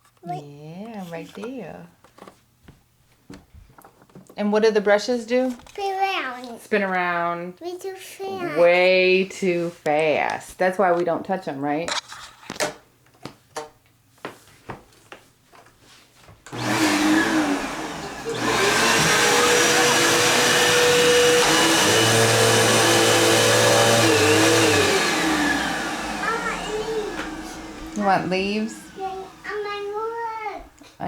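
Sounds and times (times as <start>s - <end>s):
vacuum cleaner motor whine: 16.5s - 30.8s.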